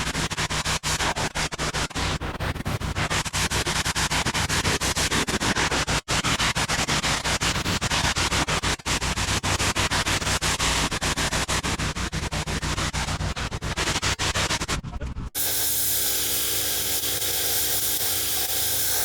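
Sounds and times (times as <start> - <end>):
water spray hissing: 15.4 - 19.0.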